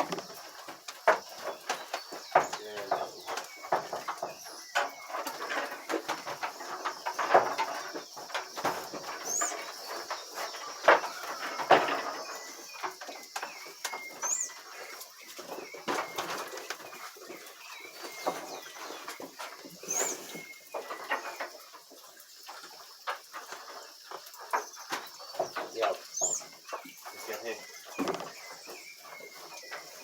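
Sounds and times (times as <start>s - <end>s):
knocks and clatter: 0.0s - 14.0s
bird chirping: 0.0s - 21.7s, 23.7s - 30.0s.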